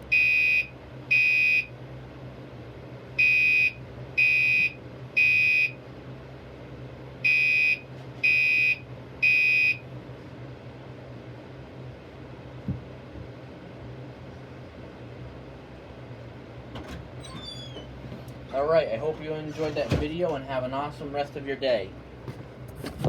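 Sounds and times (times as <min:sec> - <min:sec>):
fire alarm horn blasts: 0:00.1 - 0:01.7, 0:03.2 - 0:05.8, 0:07.2 - 0:09.8.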